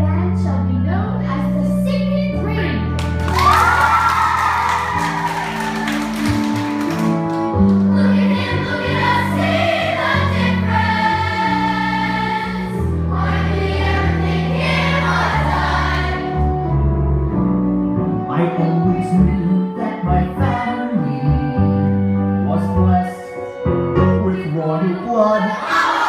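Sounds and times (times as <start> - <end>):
instrumental backing track: 0.0 - 25.6
young voices singing together: 7.6 - 16.5, 25.3 - 26.0.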